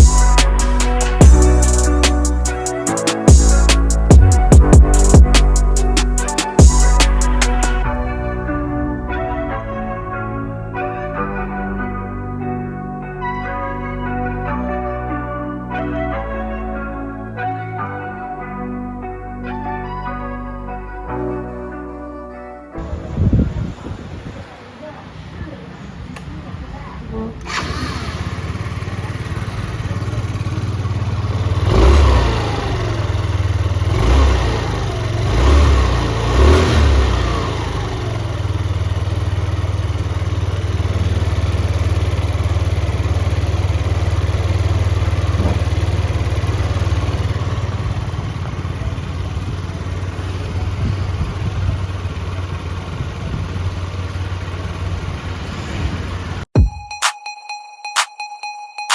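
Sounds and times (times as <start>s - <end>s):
scooter engine running: 0.0s - 9.5s, 27.1s - 56.6s
scooter throttle blips: 27.1s - 56.4s.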